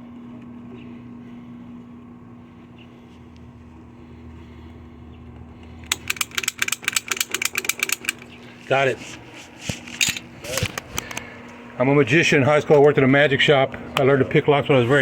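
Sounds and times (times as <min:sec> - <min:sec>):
low hum: 0:00.0 - 0:15.0
lock pick gun clicking: 0:05.9 - 0:08.2.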